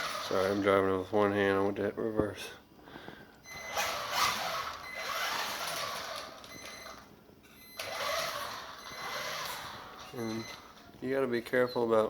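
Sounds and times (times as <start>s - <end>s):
toy truck motor whining: 0.0s - 0.7s, 3.6s - 6.6s, 7.8s - 10.4s.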